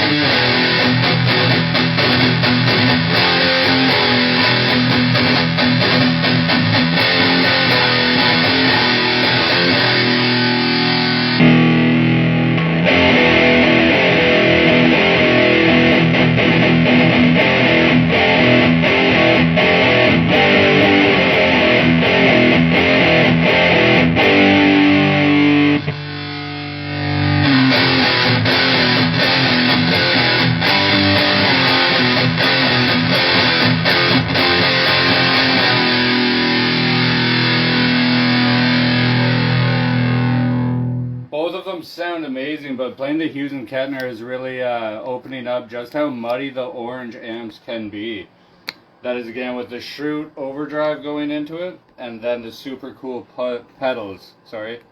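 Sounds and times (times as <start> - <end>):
distorted electric guitar riffing: 0.0 - 41.4.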